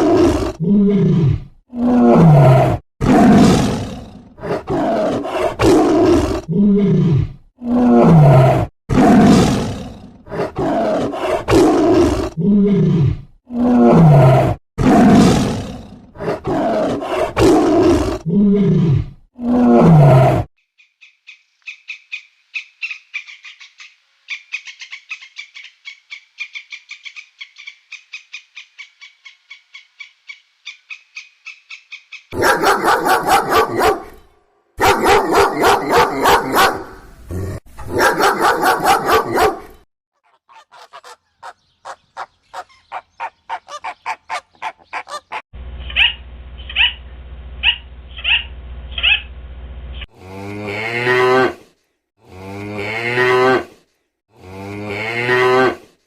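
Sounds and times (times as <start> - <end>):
deep animal roars: 0.0 - 20.5
rapid repeated animal calls: 40.2 - 47.0, 47.6 - 49.3.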